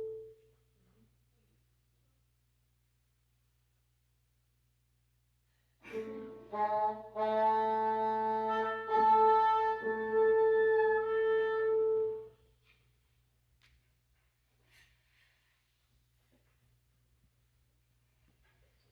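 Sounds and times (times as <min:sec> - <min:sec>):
wind quintet playing chords: 0:05.9 - 0:12.4.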